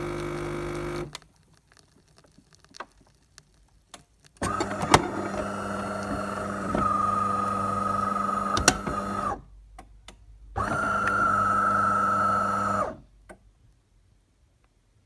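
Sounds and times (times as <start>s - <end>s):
coffee machine humming: 0.0s - 1.2s, 4.4s - 9.4s, 10.6s - 13.0s
machine clicks: 4.4s - 6.8s.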